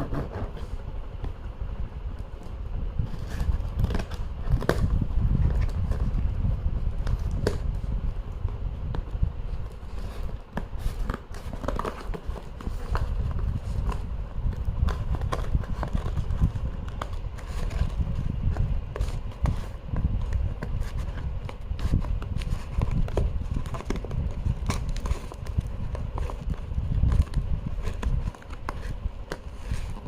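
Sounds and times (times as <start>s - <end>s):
packaging crackling and scraping: 9.5s - 30.0s.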